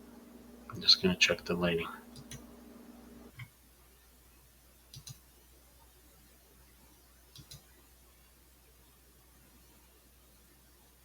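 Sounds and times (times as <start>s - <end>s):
computer mouse clicking: 4.9s - 5.2s, 7.3s - 7.7s.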